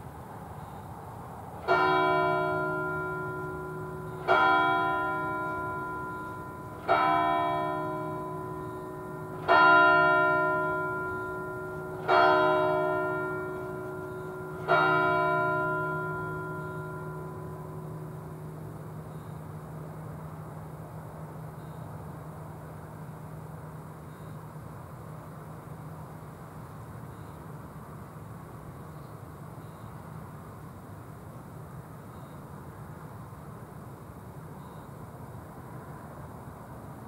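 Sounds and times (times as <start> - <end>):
church bell ringing: 1.6 - 20.4.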